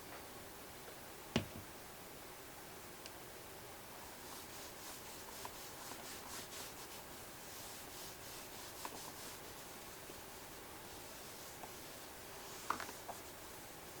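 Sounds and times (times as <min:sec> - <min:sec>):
rubbing strokes on leather: 0:04.2 - 0:14.0.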